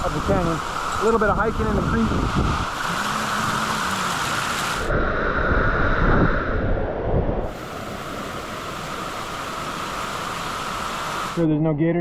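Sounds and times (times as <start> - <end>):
creek water rushing: 0.0 - 4.9, 7.5 - 11.5
wind buffeting microphone: 0.0 - 10.2.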